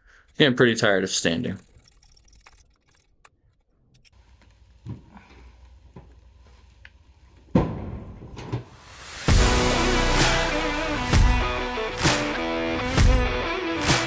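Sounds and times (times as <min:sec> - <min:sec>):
heavy hit: 0:07.6 - 0:12.4
guitar-driven background music: 0:09.3 - 0:14.0.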